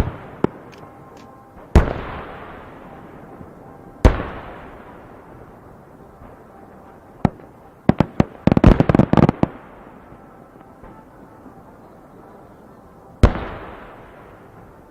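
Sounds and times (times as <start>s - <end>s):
firework sharp cracks: 0.0s - 5.6s, 7.2s - 10.2s, 13.2s - 14.9s.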